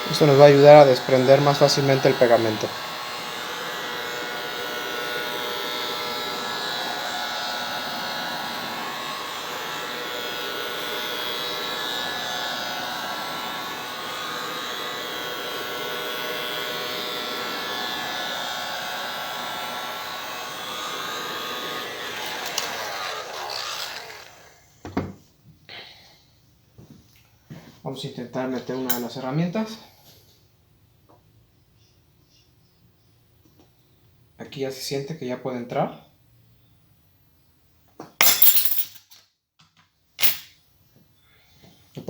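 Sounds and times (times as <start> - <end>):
heat gun blowing: 0.0 - 5.7, 15.2 - 24.8.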